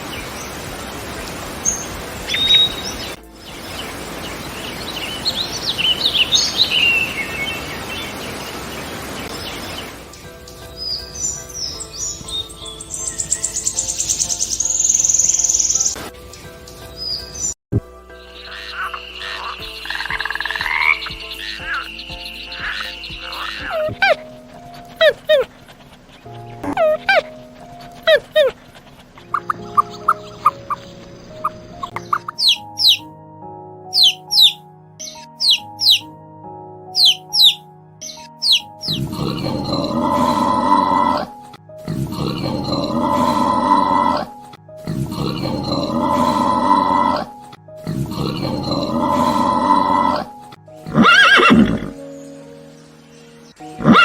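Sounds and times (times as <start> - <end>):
birds chirping: 0.0 - 33.2, 33.9 - 36.2, 36.9 - 54.0
light background music: 0.0 - 54.0
frogs croaking: 18.1 - 33.1, 33.9 - 36.1, 36.9 - 54.0
frog pulsed trill: 18.3 - 24.0
farm animal call: 18.4 - 24.2, 25.0 - 25.5, 26.6 - 27.4, 37.0 - 52.0, 53.8 - 54.0.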